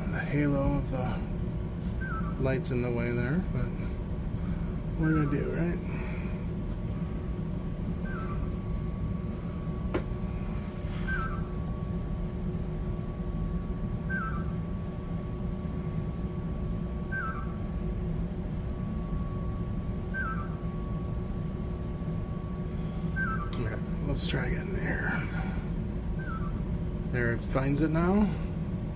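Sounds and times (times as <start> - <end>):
low electrical hum with whine: 0.0 - 28.9
electronic double chirp: 8.0 - 8.6, 11.0 - 11.6, 14.1 - 14.6, 17.1 - 17.6, 23.1 - 23.8.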